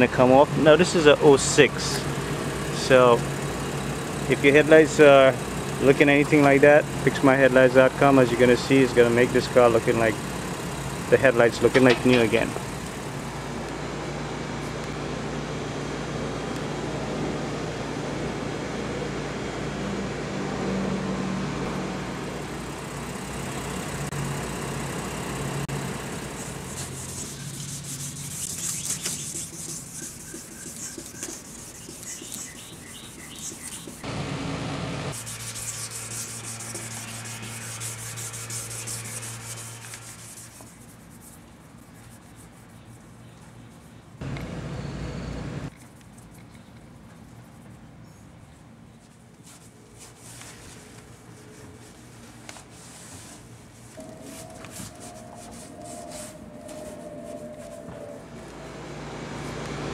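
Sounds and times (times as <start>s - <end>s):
steady low hum: 0.0s - 59.9s
sanding plastic lens: 25.8s - 34.1s, 35.1s - 44.0s.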